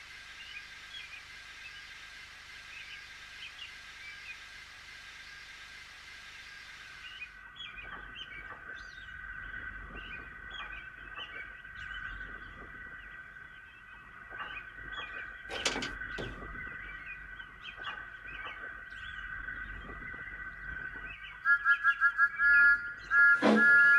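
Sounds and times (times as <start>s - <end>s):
birds chirping: 13.7s - 21.4s.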